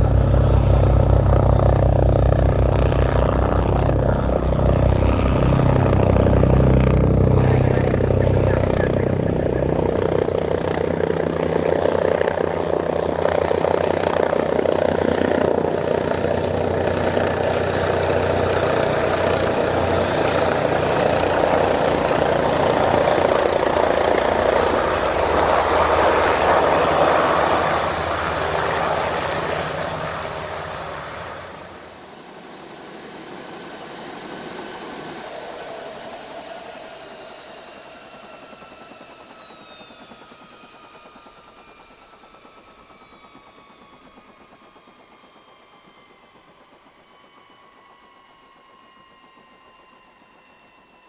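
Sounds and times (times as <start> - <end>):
helicopter engine and rotor: 0.0 - 51.0
thin high whine: 0.0 - 51.0.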